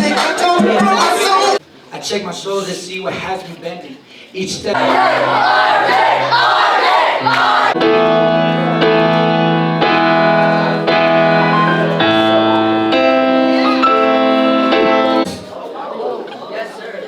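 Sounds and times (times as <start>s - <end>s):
voices singing worship song: 4.7s - 7.8s
keyboard chords: 4.8s - 15.3s.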